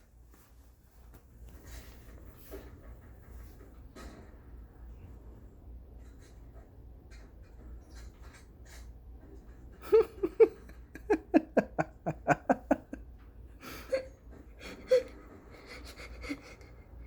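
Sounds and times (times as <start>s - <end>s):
person laughing: 9.8s - 16.8s.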